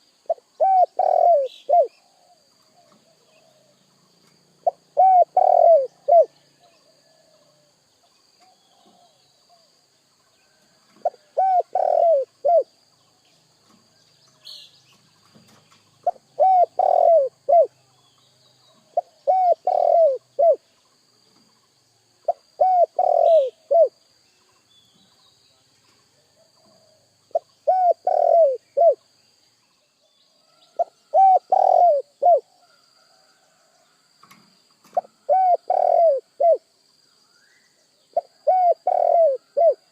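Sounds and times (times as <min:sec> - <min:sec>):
dove cooing: 0:00.0 - 0:03.8, 0:04.6 - 0:07.7, 0:10.9 - 0:12.7, 0:16.0 - 0:17.8, 0:18.8 - 0:20.7, 0:22.2 - 0:24.0, 0:26.4 - 0:29.0, 0:30.5 - 0:33.5, 0:34.8 - 0:36.7, 0:38.1 - 0:39.9.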